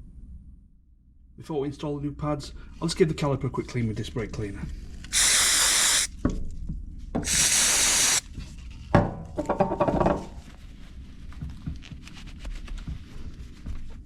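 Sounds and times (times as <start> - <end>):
aerosol spray hissing: 5.1 - 6.1, 7.2 - 8.2
knock: 9.0 - 10.4.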